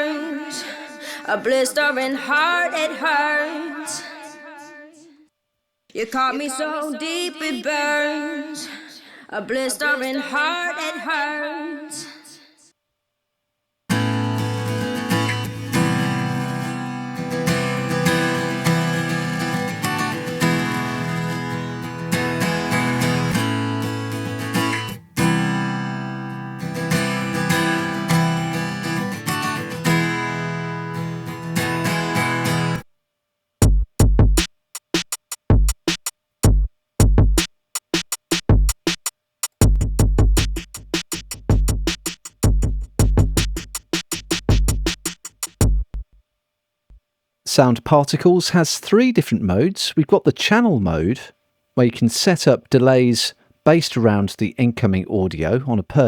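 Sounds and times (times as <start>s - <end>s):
punchy low drum hits: 33.6s - 34.4s, 36.4s - 37.4s, 39.6s - 45.0s, 45.6s - 46.2s
plucked guitar over drum-machine beat: 33.6s - 46.1s.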